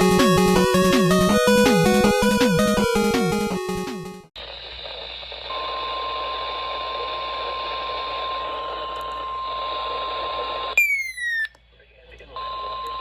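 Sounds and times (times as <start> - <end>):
steady alarm tone: 10.8 - 11.6.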